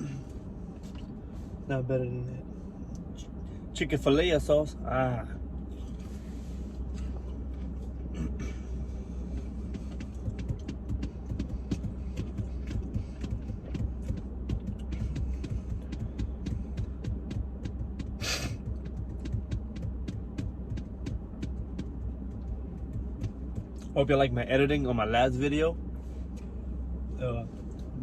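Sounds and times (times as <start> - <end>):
car engine idling: 0.0 - 28.0.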